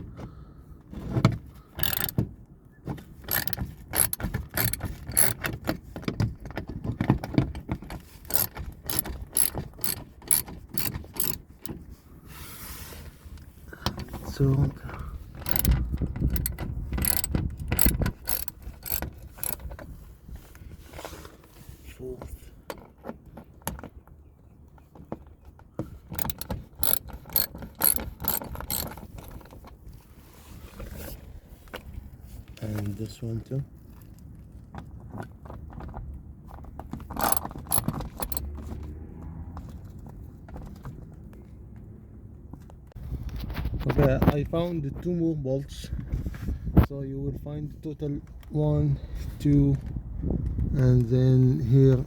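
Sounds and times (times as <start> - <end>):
metal clatter: 1.7 - 2.2, 3.0 - 11.9, 13.9 - 20.0, 25.9 - 30.0
metal clinks of wrench and bolts: 1.8 - 2.2, 3.3 - 5.7, 7.6 - 11.5, 15.4 - 19.9, 26.0 - 29.6, 37.2 - 38.4
socket ratchet clicking: 1.8 - 2.2, 3.3 - 5.8, 8.0 - 11.8, 15.3 - 19.9, 26.1 - 29.6, 37.1 - 38.5.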